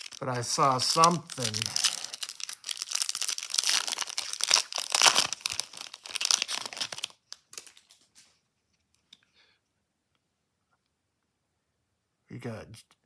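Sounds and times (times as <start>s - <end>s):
foil wrapper tearing and crinkling: 0.0s - 8.0s.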